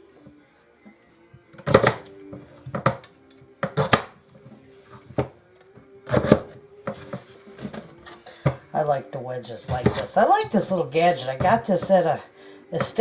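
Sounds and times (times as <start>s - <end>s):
wedge cutter cutting potatoes: 1.4s - 8.6s, 9.6s - 12.1s, 12.8s - 13.0s.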